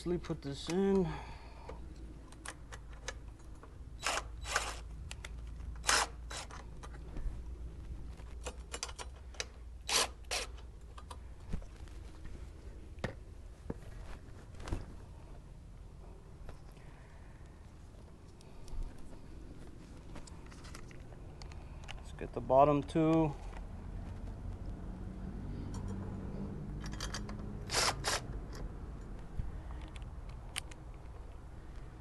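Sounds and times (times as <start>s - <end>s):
small metal clicks: 26.8s - 27.5s.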